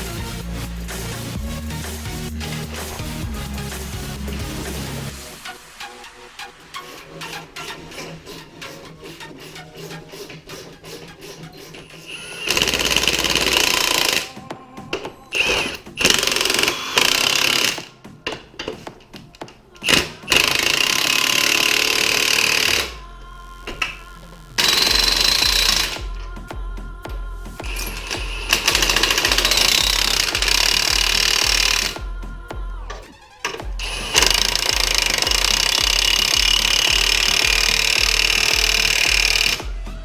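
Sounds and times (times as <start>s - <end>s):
background music: 0.0s - 40.0s
impact wrench hammering: 34.1s - 39.7s.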